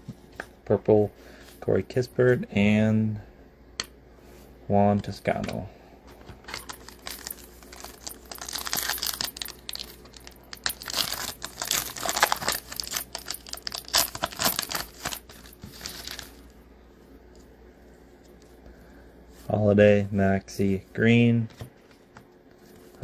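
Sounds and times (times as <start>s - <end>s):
foil wrapper crinkling and tearing: 7.0s - 16.4s.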